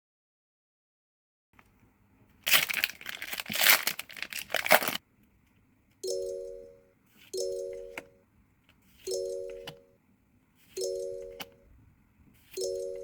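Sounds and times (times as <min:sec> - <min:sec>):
foil wrapper tearing and crinkling: 0:02.4 - 0:05.0.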